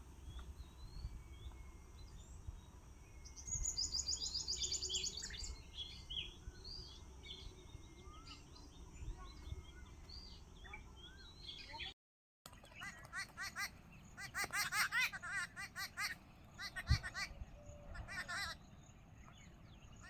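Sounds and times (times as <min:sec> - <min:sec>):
birds chattering: 0:00.1 - 0:11.9, 0:12.5 - 0:20.0
birds chirping and whistling: 0:00.2 - 0:11.9.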